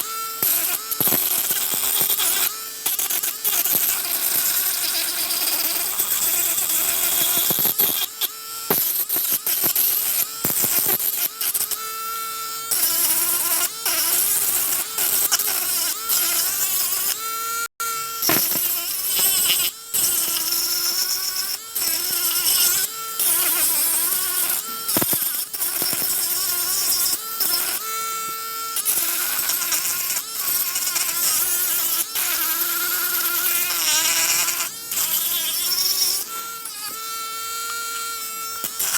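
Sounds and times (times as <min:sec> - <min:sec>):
electric sander whining: 0:00.0 - 0:38.9
gritty sanding hiss: 0:18.2 - 0:38.9.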